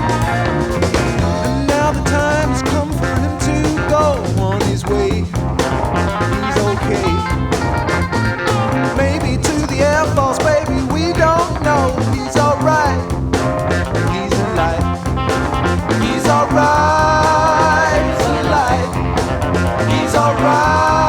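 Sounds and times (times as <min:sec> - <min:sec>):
lead guitar: 0:00.0 - 0:01.9, 0:05.5 - 0:09.0, 0:13.2 - 0:21.0
bass and drum groove: 0:00.0 - 0:21.0.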